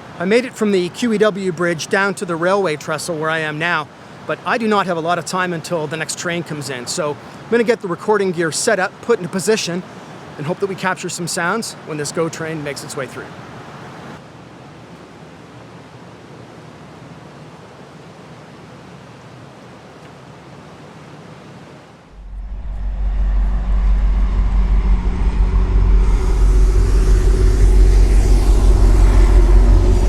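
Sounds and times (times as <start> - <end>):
creek rushing: 0.0 - 30.0
diesel train rumbling: 22.1 - 30.0
high hiss: 22.1 - 30.0.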